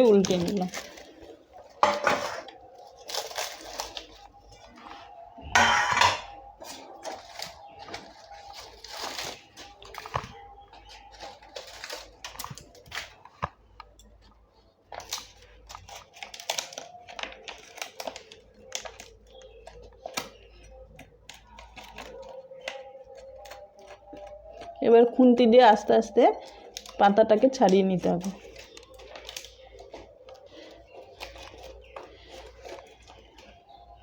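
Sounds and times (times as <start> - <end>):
leaves rustling: 2.8 - 5.1, 6.7 - 13.2
metal plate clatter: 5.5 - 6.4.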